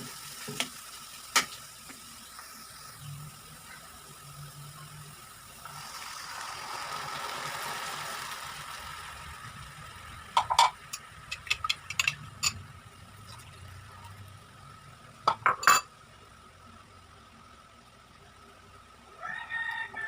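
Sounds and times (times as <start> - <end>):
utensil clinking against a pot: 10.4 - 12.6.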